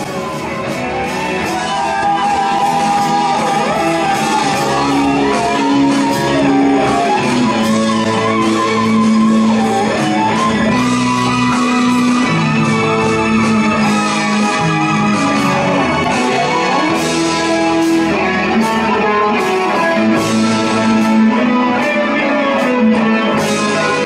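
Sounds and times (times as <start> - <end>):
bass and drums: 0.0 - 24.0
electric guitar bending notes: 0.0 - 24.0.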